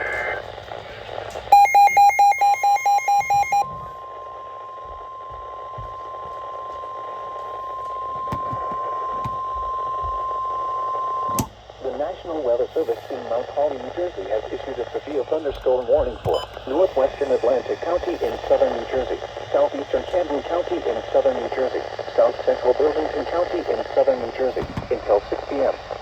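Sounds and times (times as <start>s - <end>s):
radio hiss: 0.0s - 26.0s
rapid electronic beeps: 1.5s - 3.6s
steady warning alarm tone: 1.5s - 11.5s.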